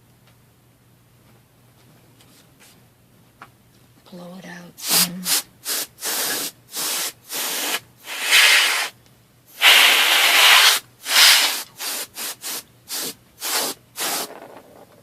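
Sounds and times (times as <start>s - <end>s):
compressed air hissing blasts: 4.8s - 14.4s.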